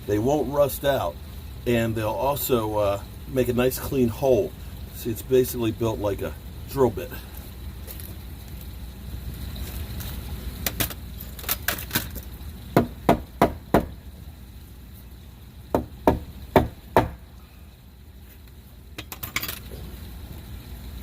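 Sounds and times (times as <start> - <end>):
hammer striking wood: 12.8 - 13.9, 15.8 - 17.2.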